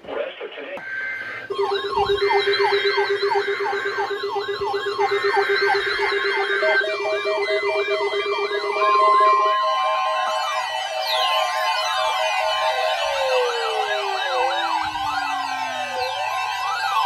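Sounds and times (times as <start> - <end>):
falling siren wails: 0.8 - 17.0
on-off beep: 0.8 - 17.0
steady alarm tone: 0.8 - 17.0
fast-pulsing low tone: 1.4 - 10.1.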